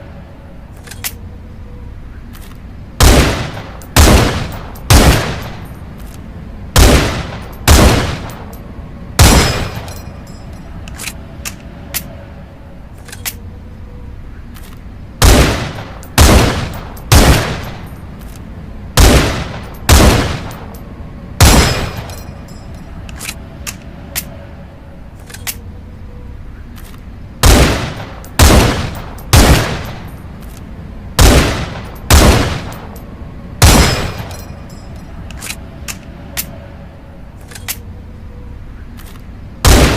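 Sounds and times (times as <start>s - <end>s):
rifle shots ringing: 3.0s - 5.7s, 6.8s - 8.5s, 9.2s - 10.1s, 15.2s - 18.0s, 19.0s - 20.8s, 21.4s - 22.4s, 27.4s - 30.2s, 31.2s - 33.0s, 33.6s - 34.6s, 39.6s - 39.9s.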